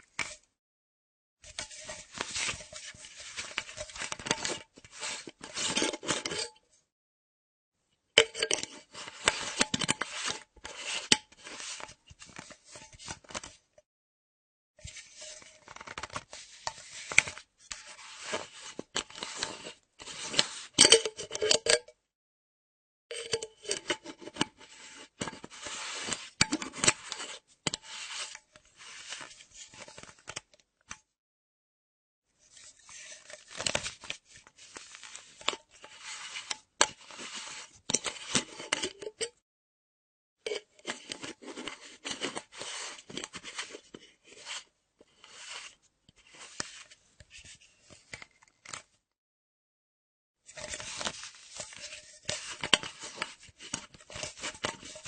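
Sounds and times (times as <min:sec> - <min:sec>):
flask screw cap scraping and clicking: 0:00.1 - 0:00.4, 0:01.5 - 0:06.6, 0:08.2 - 0:13.6, 0:14.8 - 0:22.0, 0:23.1 - 0:31.1, 0:32.6 - 0:39.4, 0:40.5 - 0:48.9, 0:50.5 - 0:55.0.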